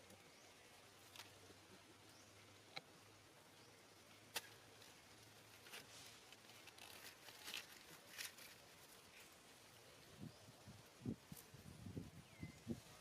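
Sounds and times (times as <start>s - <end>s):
faint rustling and scratching: 0.0s - 13.0s.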